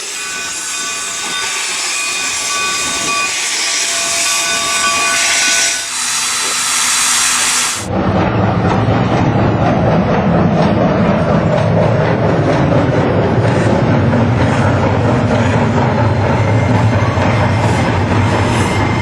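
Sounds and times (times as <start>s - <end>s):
hiss of steam: 0.0s - 7.9s
train rumbling along track: 0.0s - 19.0s.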